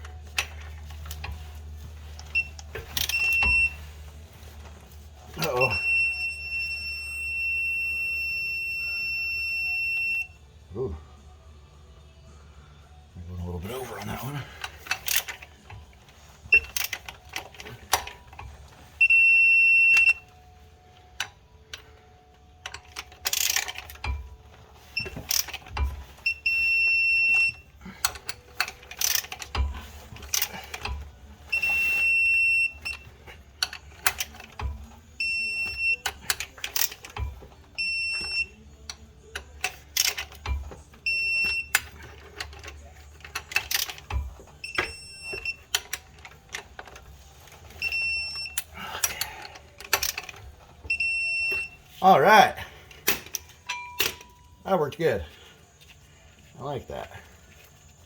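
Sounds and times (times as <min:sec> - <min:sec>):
torque wrench beeping: 0:02.2 - 0:04.0, 0:05.4 - 0:10.4, 0:16.5 - 0:20.4, 0:22.6 - 0:52.1
ratchet clicks: 0:27.3 - 0:31.7, 0:35.6 - 0:40.7.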